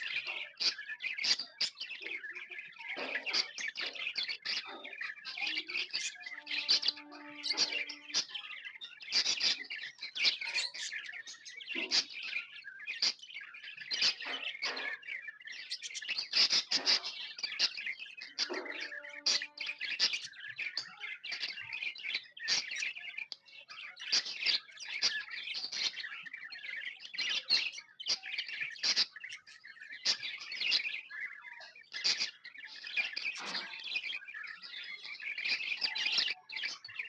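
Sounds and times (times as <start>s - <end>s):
budgerigars chirping: 0.0s - 37.0s.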